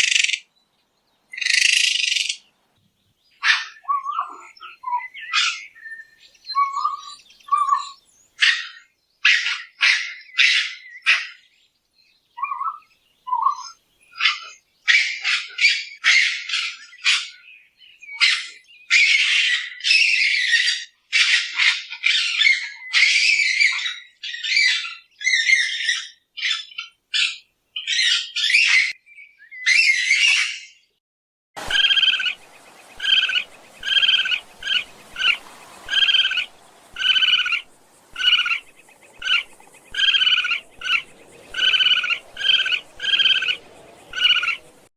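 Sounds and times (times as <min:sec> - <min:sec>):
higher chirping calls: 0:01.3 - 0:02.5, 0:03.3 - 0:11.4, 0:12.4 - 0:20.9, 0:31.6 - 0:44.9
raccoon harsh screechy calls: 0:06.6 - 0:11.4, 0:13.4 - 0:17.3, 0:18.2 - 0:29.0, 0:31.6 - 0:32.4, 0:33.0 - 0:44.7
background hiss: 0:31.6 - 0:44.9
raccoon chirps: 0:33.0 - 0:44.6.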